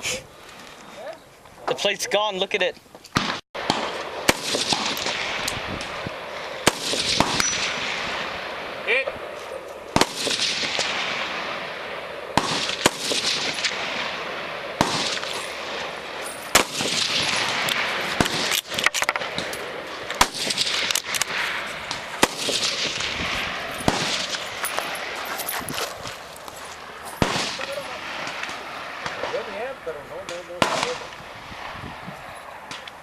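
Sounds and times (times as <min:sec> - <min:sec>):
rifle shots echoing: 0:03.2 - 0:25.9, 0:26.8 - 0:31.8.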